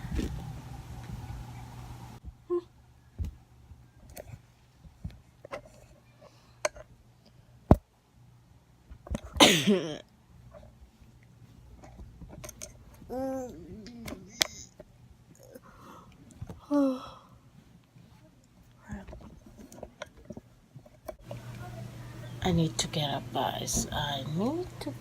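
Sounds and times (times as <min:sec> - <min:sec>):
person sneezing: 0:09.4 - 0:10.0.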